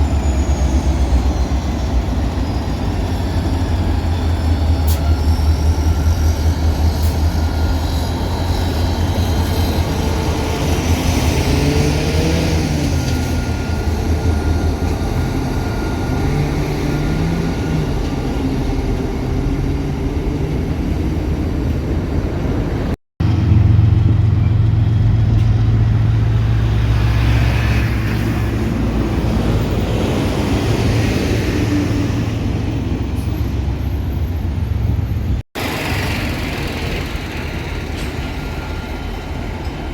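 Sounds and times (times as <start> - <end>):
diesel locomotive rumble: 0.0 - 39.9.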